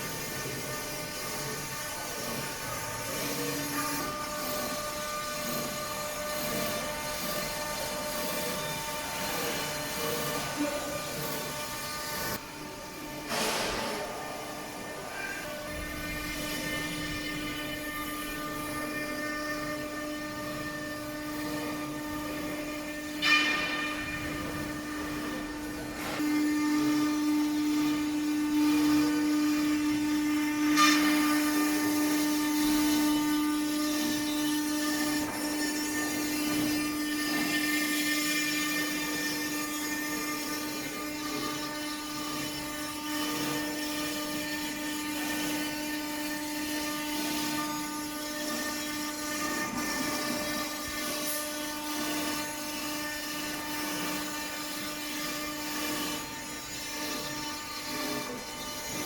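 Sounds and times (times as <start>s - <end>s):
engraving machine spindle whine: 0.0s - 59.0s.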